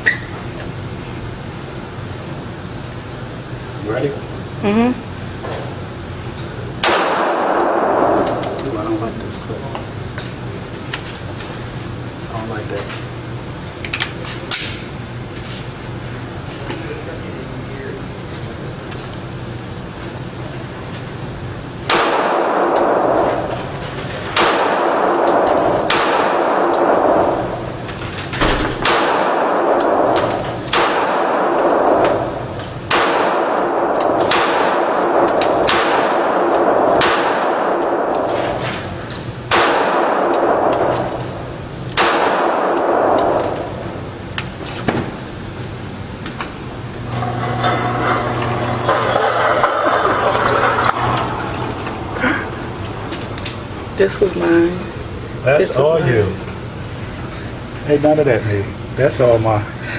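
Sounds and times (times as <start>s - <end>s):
handgun shots echoing: 6.8s - 8.6s, 21.9s - 23.3s, 24.3s - 27.3s, 28.8s - 32.2s, 32.9s - 38.6s, 39.5s - 41.4s, 42.0s - 43.8s.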